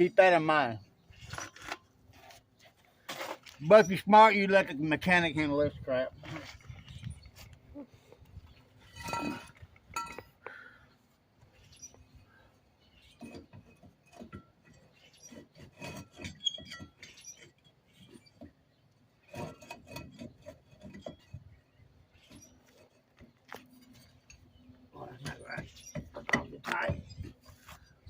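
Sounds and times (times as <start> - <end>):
metal tools clinking and scraping: 1.1 - 2.4, 8.8 - 10.4.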